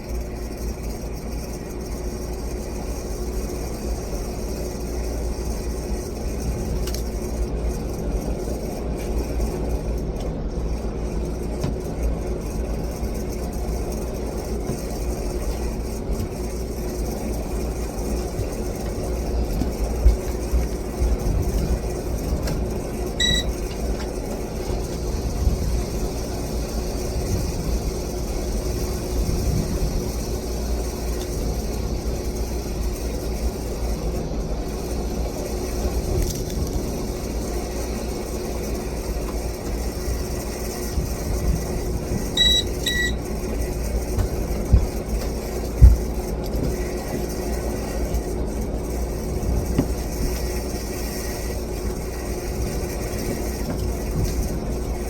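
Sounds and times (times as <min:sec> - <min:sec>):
ceiling fan humming: 0:00.0 - 0:55.0
short electronic beeps: 0:23.2 - 0:23.6, 0:42.4 - 0:43.2.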